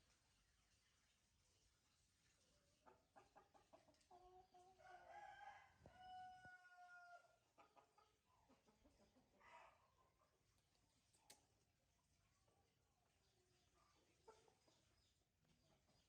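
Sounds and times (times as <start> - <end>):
faint clicks: 11.1 - 11.5.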